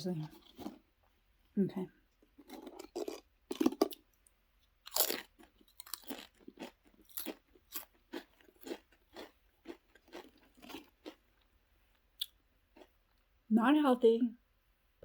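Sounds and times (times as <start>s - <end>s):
crisps crunching while chewed: 0.2s - 1.0s, 2.2s - 13.3s.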